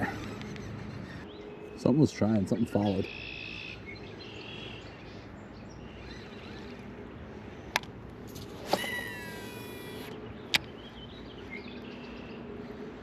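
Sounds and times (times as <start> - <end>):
fishing reel spool whining: 5.2 - 7.5, 8.3 - 10.2.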